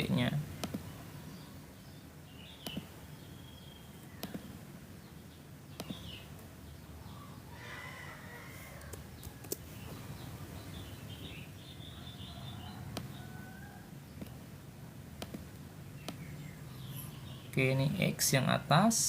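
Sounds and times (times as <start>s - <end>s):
low steady hum: 0.0s - 19.0s
faint bird chirps: 0.9s - 5.2s
computer mouse clicks: 2.6s - 2.9s, 4.2s - 4.5s, 8.8s - 9.6s, 15.2s - 16.2s.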